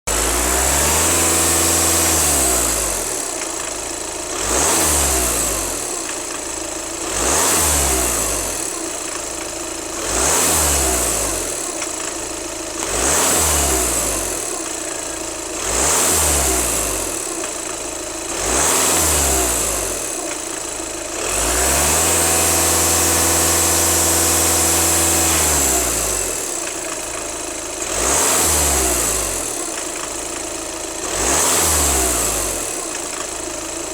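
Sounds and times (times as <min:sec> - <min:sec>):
diesel engine revving: 0:00.1 - 0:33.9.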